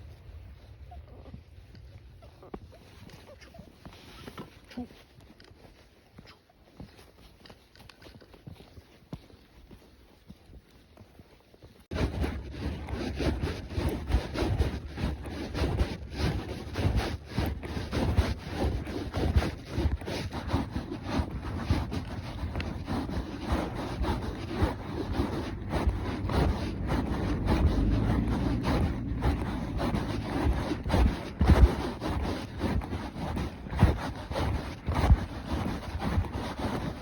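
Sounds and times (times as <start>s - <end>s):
horse hooves striking ground: 0.0s - 37.0s
rubbing noise: 11.9s - 37.0s
wind buffeting microphone: 11.9s - 37.0s.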